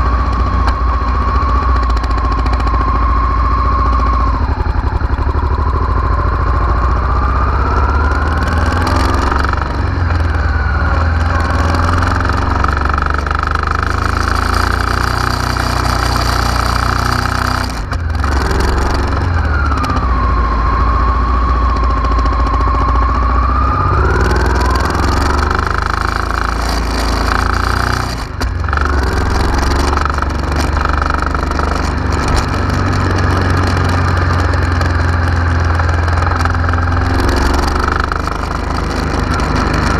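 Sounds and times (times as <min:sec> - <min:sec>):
engine whine: 0:00.0 - 0:39.9
motorcycle engine running: 0:00.0 - 0:39.9.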